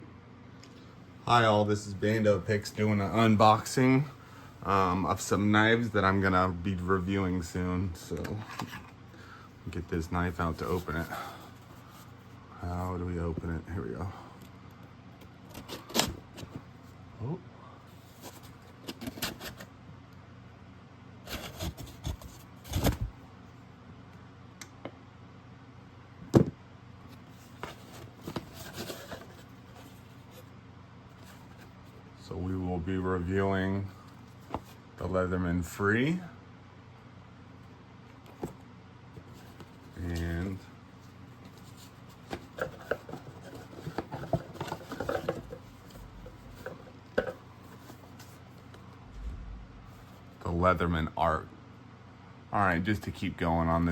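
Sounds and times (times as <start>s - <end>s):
packaging knocks and scrapes: 41.5s - 48.4s.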